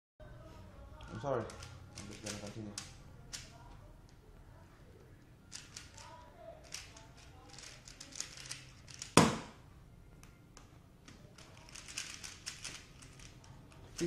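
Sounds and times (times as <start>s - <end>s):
speed cube clicking and rattling: 1.4s - 3.5s, 5.5s - 9.2s, 11.0s - 14.0s
loud thump: 9.2s - 9.6s.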